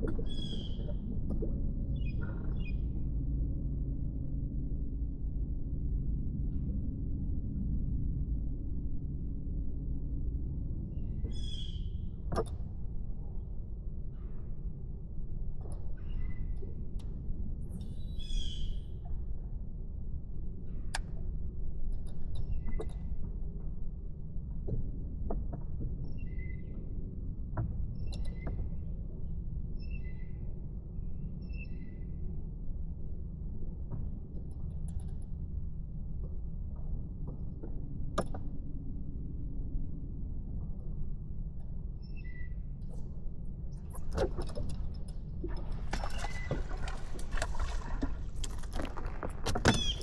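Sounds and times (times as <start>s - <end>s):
steady low rumble: 0.0s - 22.4s
water splashing against a boat: 43.9s - 50.0s
irregular knocks and clicks: 45.5s - 50.0s.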